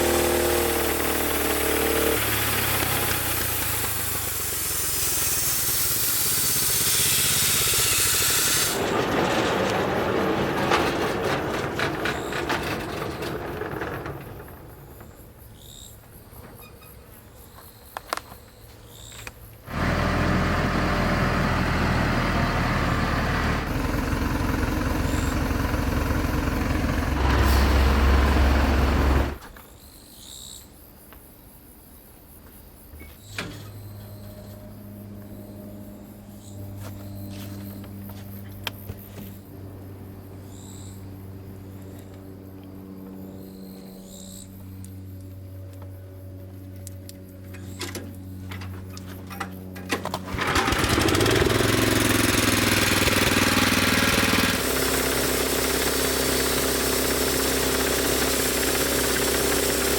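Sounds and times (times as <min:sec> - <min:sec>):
band sawmill running: 0:00.0 - 0:15.9, 0:19.7 - 0:29.5, 0:48.2 - 0:59.9.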